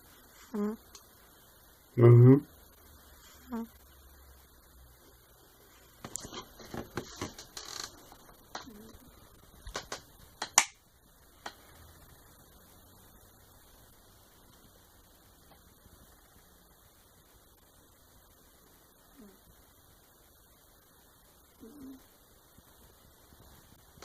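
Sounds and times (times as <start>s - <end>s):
faint room hum: 0.0s - 24.0s
sharp clicks and snaps: 9.6s - 10.8s.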